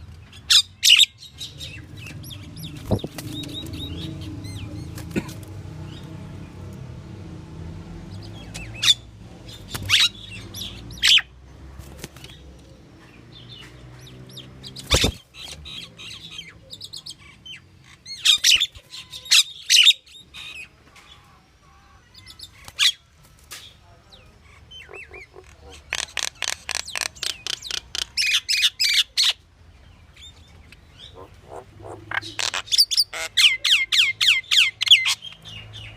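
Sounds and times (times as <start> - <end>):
bird chirps and squawks: 14.3 - 23.0, 24.4 - 29.4, 31.0 - 35.4.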